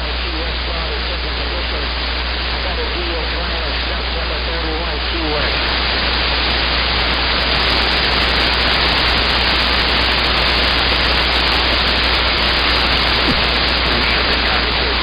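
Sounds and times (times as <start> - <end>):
cb radio static hiss: 0.0 - 15.0.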